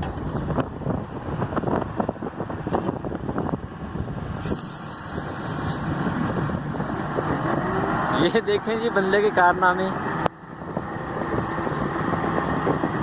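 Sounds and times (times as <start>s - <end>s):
excavator diesel engine under load: 0.0s - 13.0s
hiss: 4.4s - 5.9s.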